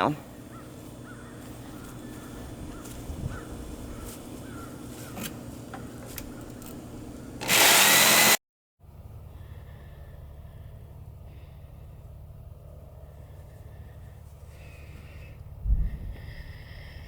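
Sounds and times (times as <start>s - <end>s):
jigsaw cutting boards: 7.4s - 8.4s.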